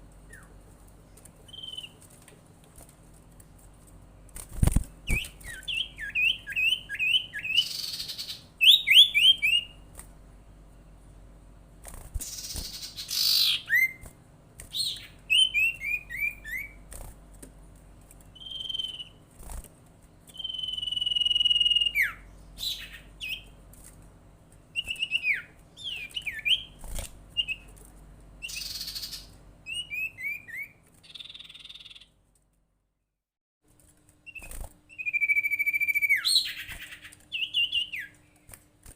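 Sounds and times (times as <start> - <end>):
bird whistled calls: 1.5 - 2.0, 5.1 - 9.8, 12.2 - 14.0, 14.8 - 16.8, 18.4 - 19.2, 20.4 - 23.5, 28.4 - 32.1, 34.3 - 38.1
long drawn-out bird whistle: 1.5 - 2.0, 18.4 - 19.2, 20.4 - 23.0, 34.3 - 36.6.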